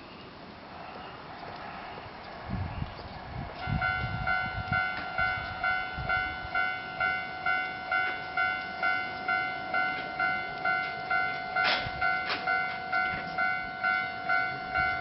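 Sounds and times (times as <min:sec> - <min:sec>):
level-crossing warning bell: 0:03.6 - 0:15.0.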